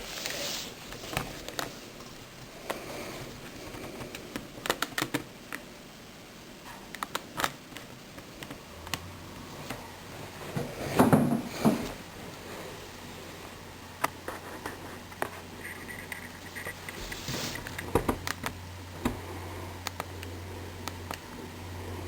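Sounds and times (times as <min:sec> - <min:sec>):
scrape and rustle: 0:00.0 - 0:02.0, 0:14.2 - 0:17.9
faint low hum: 0:00.0 - 0:22.0.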